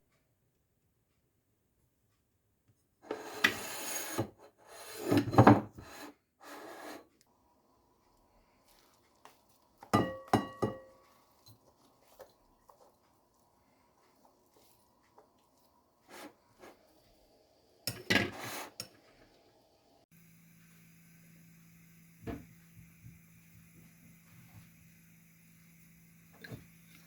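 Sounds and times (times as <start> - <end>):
kitchen utensil scraping: 3.0 - 7.1, 14.0 - 16.9, 17.8 - 19.3.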